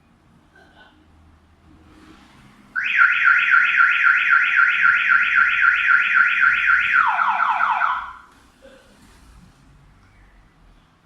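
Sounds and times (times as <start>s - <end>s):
car alarm siren chirping: 2.8s - 8.3s.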